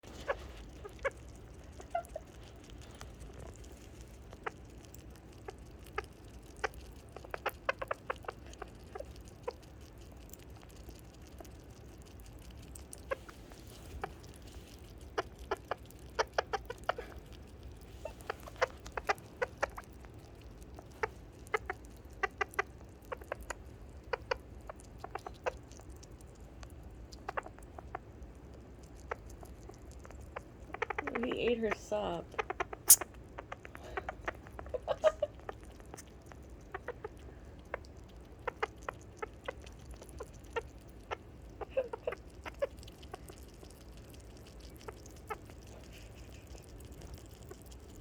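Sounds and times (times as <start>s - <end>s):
sugar glider chirping: 0.1s - 3.4s, 4.2s - 9.8s, 14.9s - 26.2s, 26.8s - 28.2s, 28.9s - 48.0s.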